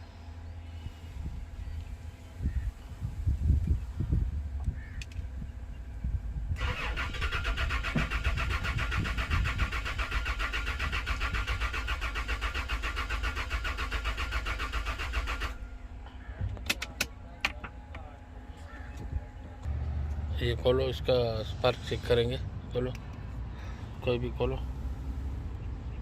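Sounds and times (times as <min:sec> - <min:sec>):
starter motor cranking engine: 0:06.6 - 0:15.7.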